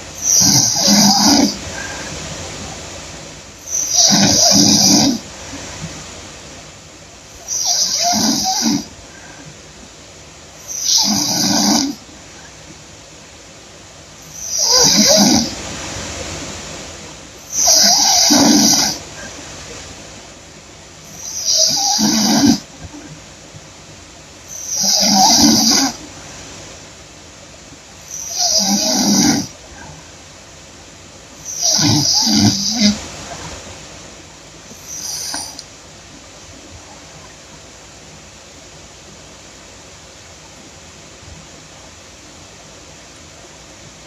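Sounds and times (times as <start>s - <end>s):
woman snoring: 0.2s - 2.2s, 3.6s - 5.3s, 7.4s - 9.5s, 10.6s - 12.0s, 14.2s - 15.6s, 17.4s - 19.3s, 21.1s - 22.7s, 24.5s - 26.0s, 28.1s - 29.6s, 31.5s - 33.1s, 34.7s - 35.6s.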